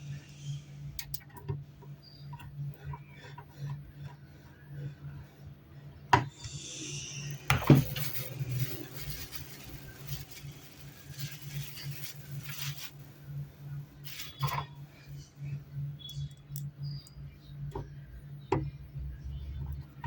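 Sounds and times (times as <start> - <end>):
steady low hum: 0.0 - 20.0
rubbing and scraping: 7.7 - 13.2.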